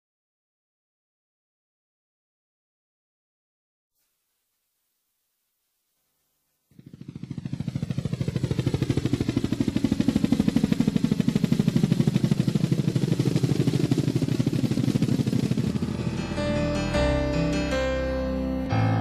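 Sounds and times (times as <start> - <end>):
helicopter rotor chopping: 6.7 - 17.6
piano: 15.6 - 19.0.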